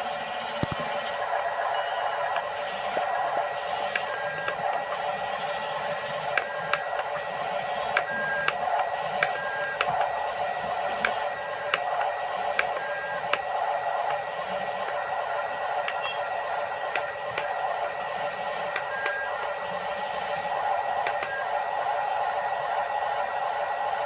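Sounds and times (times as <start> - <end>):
small electric motor whirring: 0.0 - 21.6
sharp clicks: 0.6 - 0.9.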